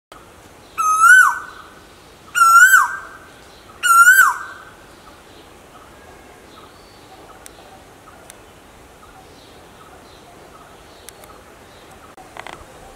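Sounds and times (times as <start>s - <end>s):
bird whistled calls: 0.8s - 1.6s, 2.4s - 3.2s, 3.8s - 4.6s.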